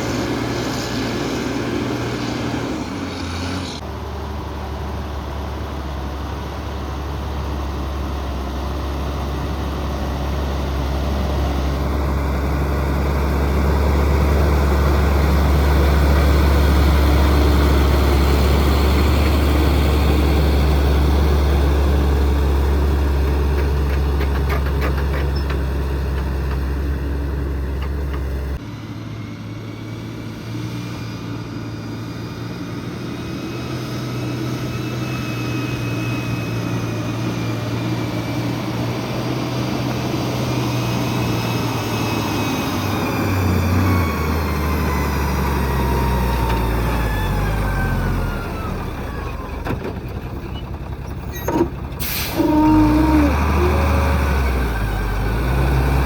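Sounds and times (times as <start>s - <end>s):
diesel machinery droning: 0.0s - 56.0s.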